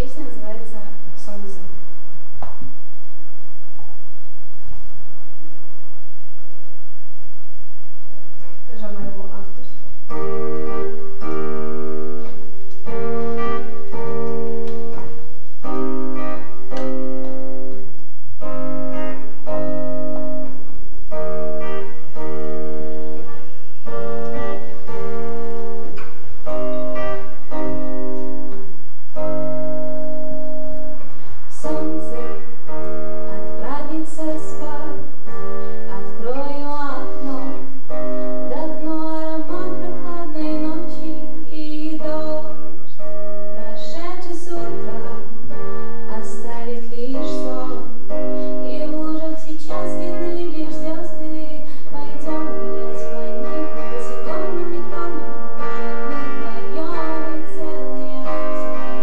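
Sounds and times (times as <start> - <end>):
piano playing repeated chords: 0.0 - 59.0
person singing: 31.5 - 32.5, 33.3 - 35.0, 38.5 - 42.7, 43.6 - 45.2, 46.1 - 59.0.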